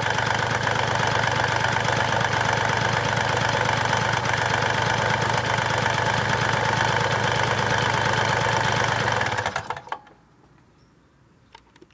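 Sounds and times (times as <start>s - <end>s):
engine running with rattling knock: 0.0s - 9.9s.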